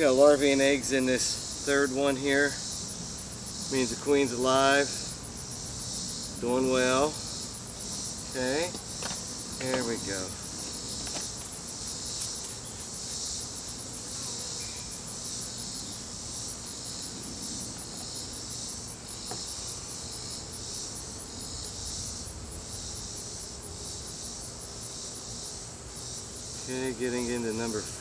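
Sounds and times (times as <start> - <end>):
crickets trilling: 0.0 - 28.0.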